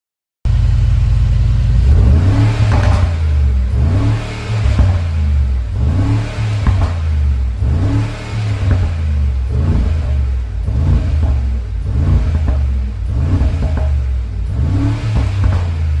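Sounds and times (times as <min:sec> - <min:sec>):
car engine revving: 0:00.5 - 0:16.0
exhaust pops and crackles: 0:00.8 - 0:16.0.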